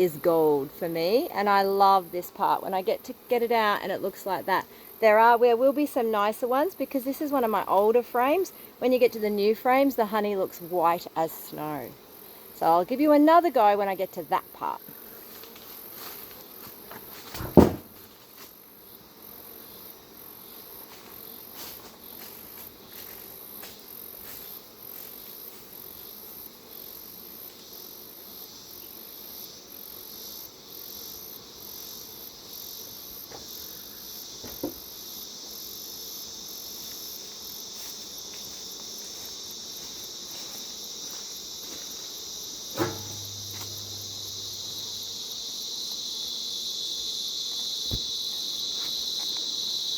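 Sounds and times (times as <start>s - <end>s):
low insect drone: 0.0s - 49.9s
sharp knocks: 17.4s - 17.9s, 42.8s - 45.0s
high pulsing insect trill: 18.6s - 49.9s.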